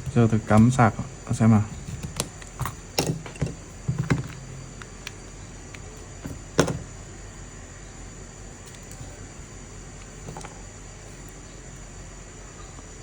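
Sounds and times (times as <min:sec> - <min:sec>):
phone and cable clicks and knocks: 0:01.8 - 0:05.1, 0:06.2 - 0:06.9.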